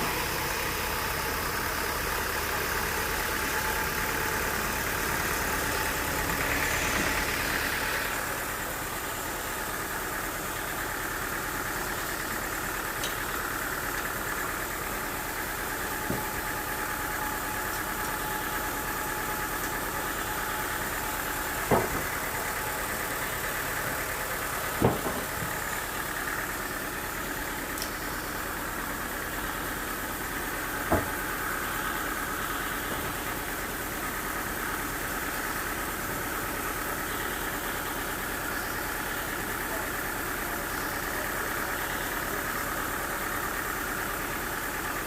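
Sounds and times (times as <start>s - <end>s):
sawmill machinery running: 0.0s - 45.0s
sharp knocks: 21.6s - 22.1s, 24.8s - 25.3s.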